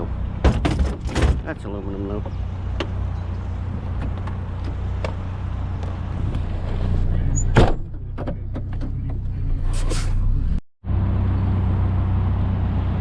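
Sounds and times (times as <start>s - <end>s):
truck engine idling: 0.0s - 6.3s
metal clicks and clunks: 0.5s - 1.6s.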